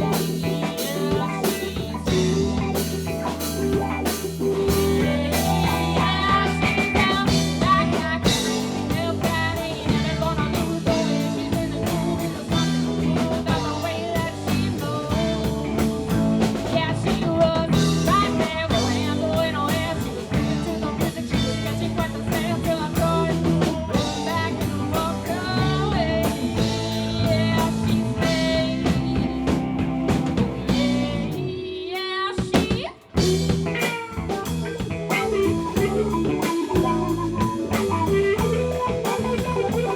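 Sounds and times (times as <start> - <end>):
band playing blues-rock: 0.0 - 39.9.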